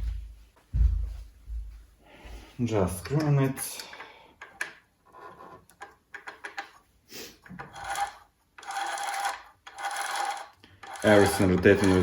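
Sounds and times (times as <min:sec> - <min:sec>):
small clicks and scrapes: 0:03.8 - 0:06.8, 0:07.4 - 0:12.0
gears rubbing and grinding: 0:07.6 - 0:12.0.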